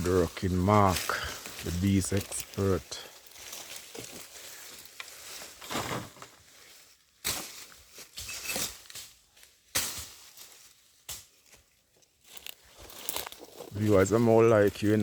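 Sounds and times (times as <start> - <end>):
rustling and swishing: 0.0 - 9.2
machete chopping brush: 7.2 - 9.1, 9.7 - 10.2.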